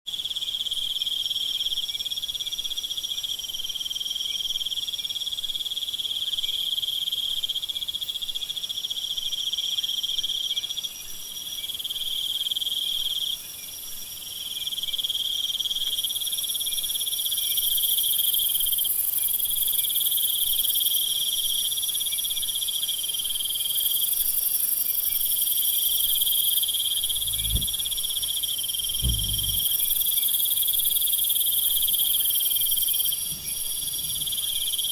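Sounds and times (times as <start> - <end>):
crickets and insects trilling: 15.0 - 34.9
short low thuds: 27.0 - 30.0.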